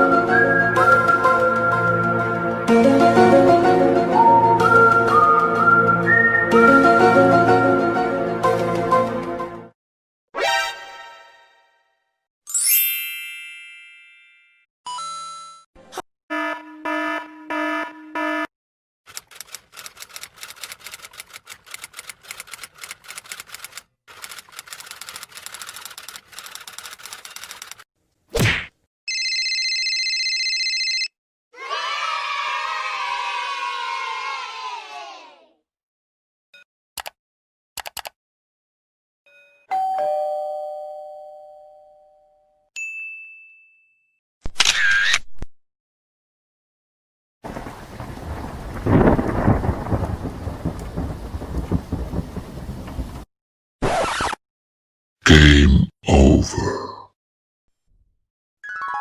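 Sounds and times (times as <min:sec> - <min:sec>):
typing keys clatter: 0:19.1 - 0:27.8
quick clicks: 0:19.1 - 0:27.9, 0:37.0 - 0:37.2, 0:37.8 - 0:38.2
two-tone doorbell chime: 0:39.3 - 0:44.0.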